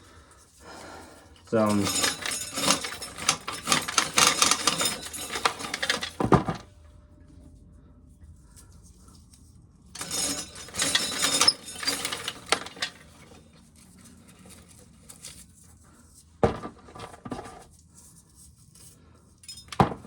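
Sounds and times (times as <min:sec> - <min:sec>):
corn sheller rattling and grinding: 0:01.4 - 0:06.7, 0:10.0 - 0:13.5, 0:16.4 - 0:17.6.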